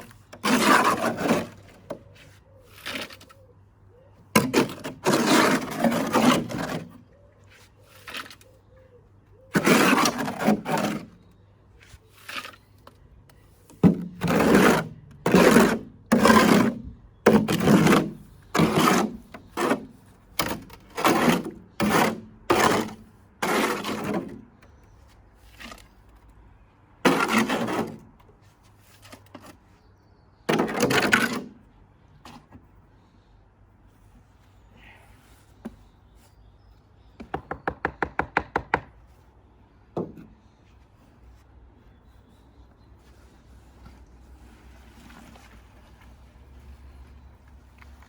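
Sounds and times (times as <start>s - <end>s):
wet cement scraped in bucket: 0.0s - 3.4s, 4.4s - 8.4s, 9.5s - 24.5s, 27.1s - 28.2s, 30.5s - 31.7s, 43.0s - 47.2s.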